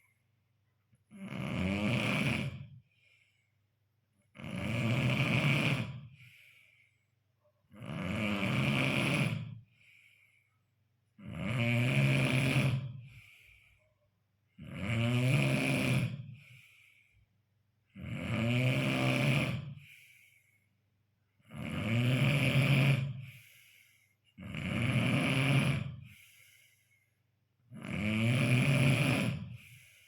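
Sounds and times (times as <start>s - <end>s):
man snoring: 1.1s - 2.8s, 4.2s - 6.6s, 7.7s - 10.0s, 11.2s - 13.8s, 14.5s - 17.0s, 17.8s - 20.4s, 21.4s - 26.9s, 27.6s - 30.0s
breathy exhale: 6.1s - 7.2s, 13.0s - 14.0s, 19.8s - 20.8s, 23.2s - 24.3s, 26.0s - 27.2s, 29.5s - 30.0s.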